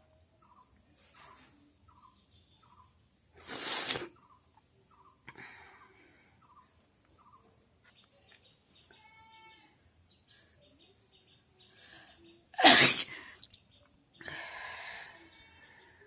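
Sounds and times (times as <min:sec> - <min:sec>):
faint high chirping: 0:00.0 - 0:16.0
woman sneezing: 0:12.6 - 0:13.3.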